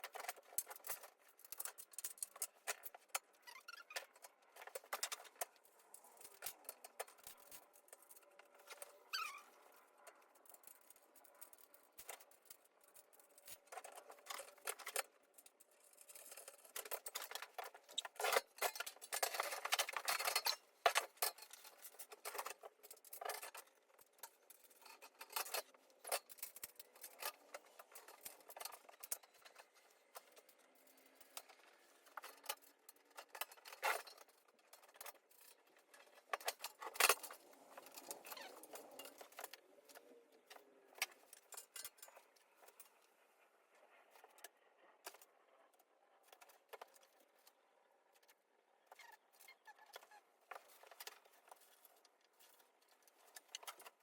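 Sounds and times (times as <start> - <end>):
parts and packaging rustling: 0.0 - 43.2.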